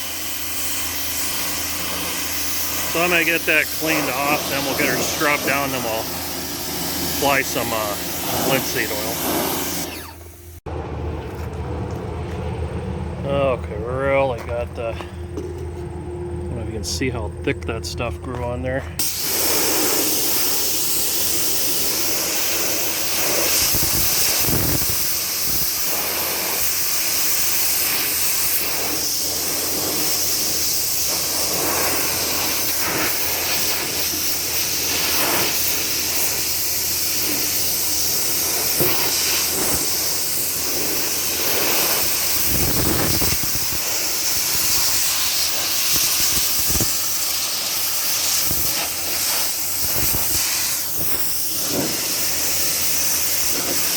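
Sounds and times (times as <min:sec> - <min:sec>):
pressure washer spraying: 0:00.0 - 0:10.6, 0:19.0 - 0:53.9
steady low hum: 0:00.0 - 0:20.9.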